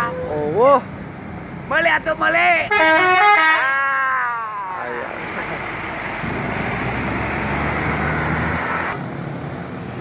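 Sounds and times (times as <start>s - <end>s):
diesel engine hum: 0.0s - 10.0s
road and tyre noise: 0.0s - 10.0s
bus musical horn: 2.7s - 3.8s.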